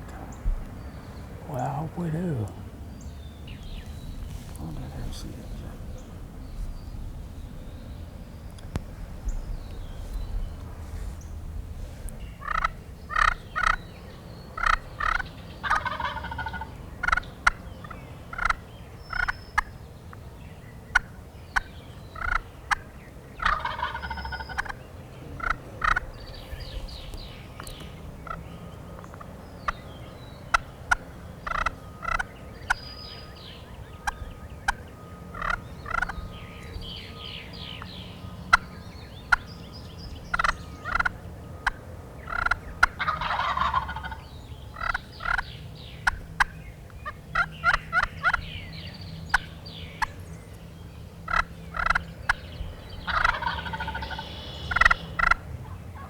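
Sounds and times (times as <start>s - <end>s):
turkeys gobbling: 12.4s - 13.8s, 14.6s - 19.7s, 20.9s - 29.8s, 30.5s - 32.8s, 34.0s - 36.5s, 40.3s - 48.5s, 51.3s - 56.0s
turkey yelping and clucking: 14.6s - 17.6s, 23.4s - 26.7s, 40.3s - 44.2s, 53.1s - 55.4s.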